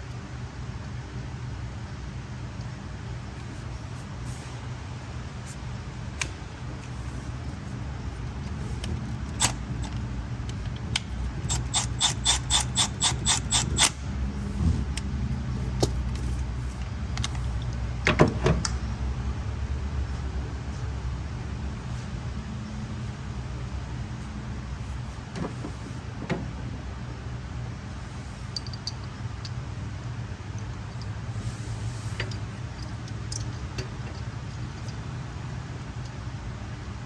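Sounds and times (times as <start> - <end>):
ratchet wrench clicking: 9.3 - 10.0, 11.4 - 14.0
tool clatter: 11.4 - 14.0.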